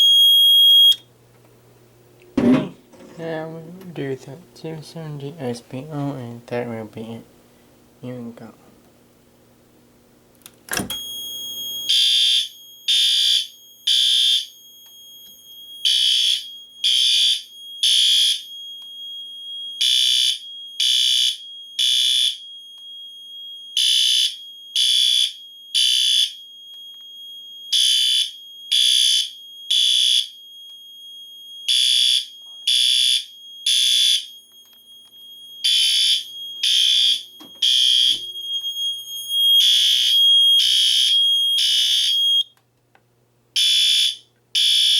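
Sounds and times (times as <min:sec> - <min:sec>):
fire alarm horn beeps: 0:00.0 - 0:01.1, 0:10.7 - 0:42.6, 0:43.6 - 0:44.9
pull station click: 0:10.4 - 0:11.0.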